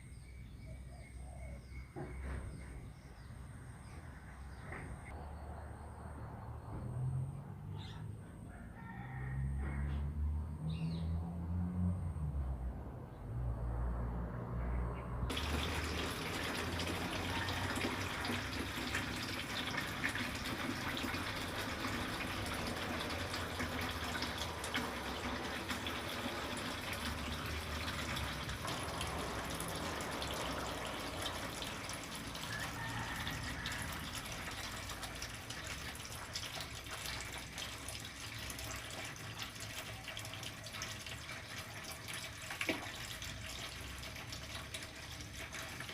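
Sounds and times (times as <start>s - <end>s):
water trickling and splashing: 15.3s - 45.9s.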